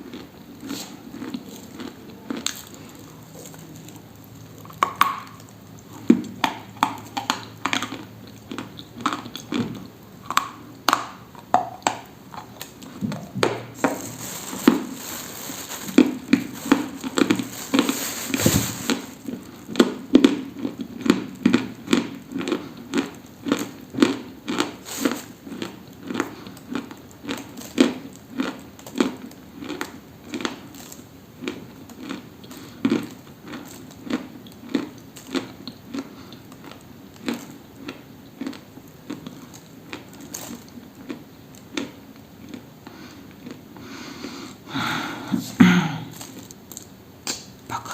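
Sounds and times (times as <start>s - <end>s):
crunchy food chewing: 0.0s - 44.6s.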